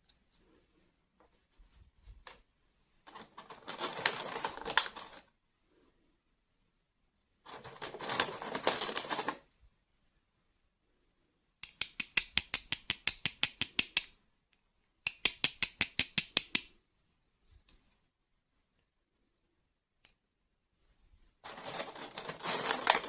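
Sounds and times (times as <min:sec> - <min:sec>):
plastic packaging crinkling: 0:03.1 - 0:05.2, 0:07.5 - 0:09.4, 0:21.4 - 0:23.0.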